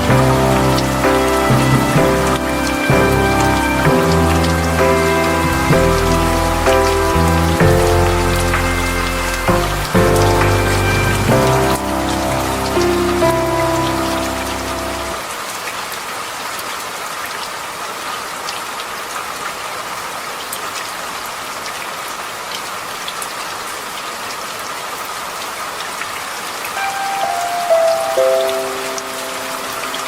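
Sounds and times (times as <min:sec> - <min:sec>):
drips ticking: 0:00.0 - 0:15.2
soft music notes: 0:00.0 - 0:15.2, 0:26.8 - 0:30.0
steady rain falling: 0:00.0 - 0:30.0.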